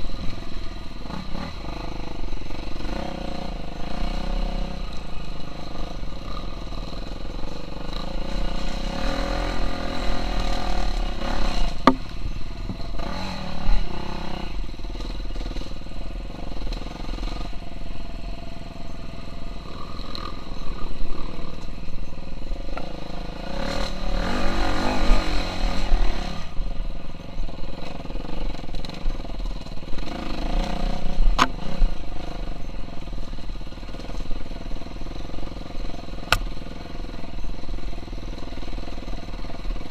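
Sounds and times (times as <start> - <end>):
motocross engine revving: 0.0 - 21.6, 22.6 - 26.6, 27.7 - 39.9
sharp knocks: 11.8 - 12.1.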